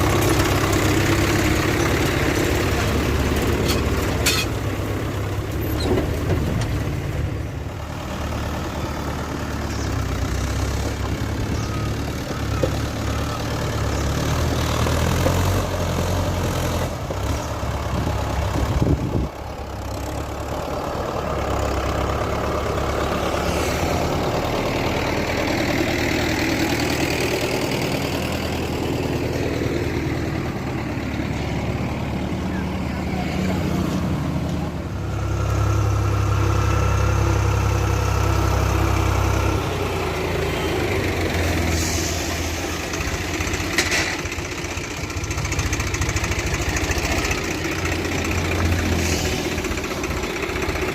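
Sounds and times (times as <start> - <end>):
diesel engines running: 0.0 - 50.9.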